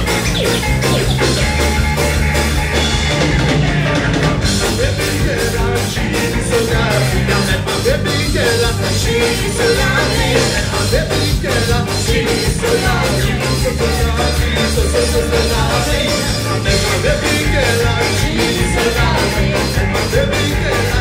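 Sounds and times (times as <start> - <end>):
bass: 0.0 - 21.0
drum kit: 0.0 - 21.0
ska band playing: 0.0 - 21.0.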